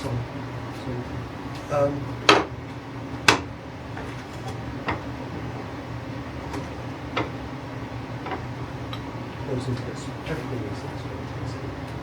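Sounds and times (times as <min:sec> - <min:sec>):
steady low hum: 0:00.0 - 0:12.0
hard objects knocking: 0:02.2 - 0:02.6, 0:03.2 - 0:05.2, 0:06.4 - 0:07.4, 0:08.2 - 0:09.0.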